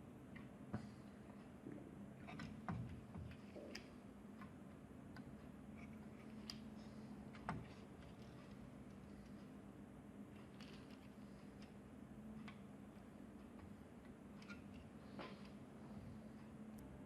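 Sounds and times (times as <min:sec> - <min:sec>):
faint low hum: 0:00.0 - 0:17.0
light clicks and taps: 0:12.4 - 0:15.6.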